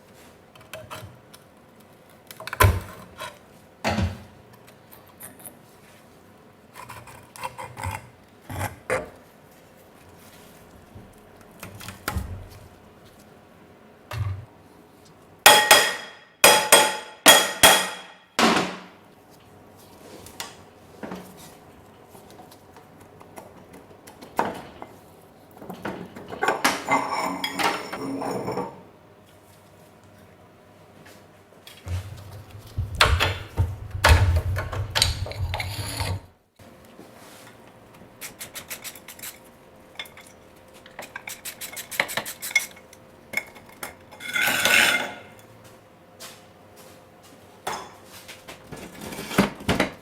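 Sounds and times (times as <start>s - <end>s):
hammer blows on metal: 15.5s - 18.2s.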